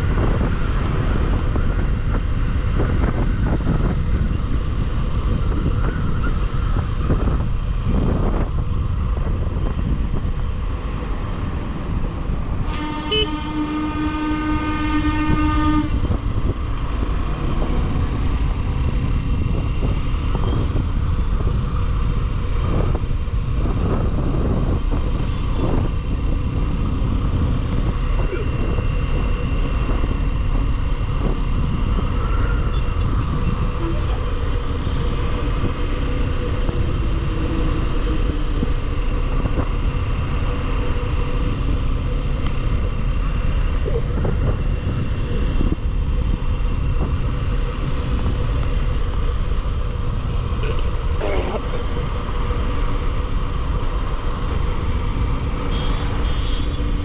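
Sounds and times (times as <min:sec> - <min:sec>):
wind rumble on microphone: 0:00.0 - 0:57.0.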